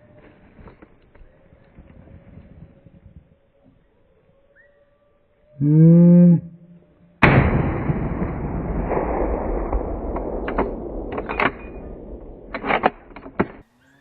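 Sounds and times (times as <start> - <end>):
rifle shot with long echo: 7.2 - 13.7
sharp clicks: 10.1 - 13.6.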